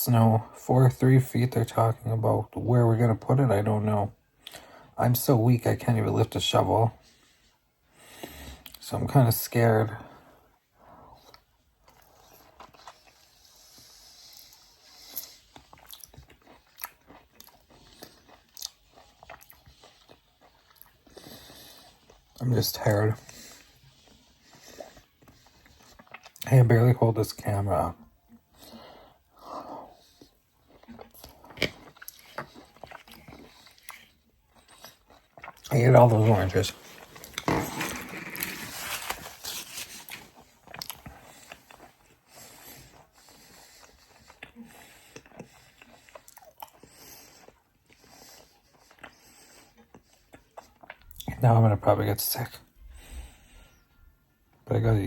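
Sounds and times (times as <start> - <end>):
person chewing fruit: 8.0 - 8.8, 11.1 - 51.4.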